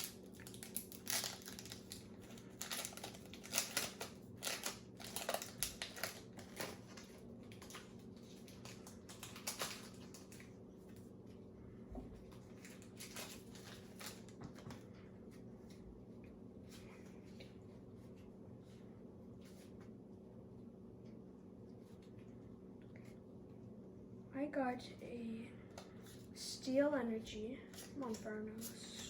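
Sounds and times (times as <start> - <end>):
foil wrapper crinkling and tearing: 0.0 - 10.5, 12.5 - 14.4.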